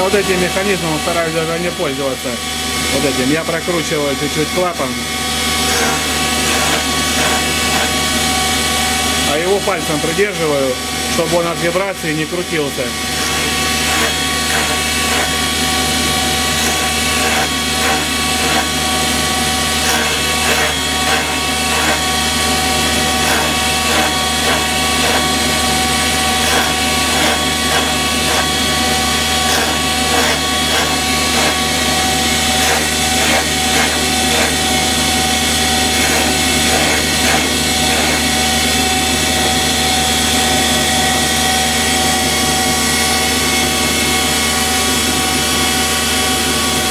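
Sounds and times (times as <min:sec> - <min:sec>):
valve-grinding machine grinding: 0:00.0 - 0:46.9.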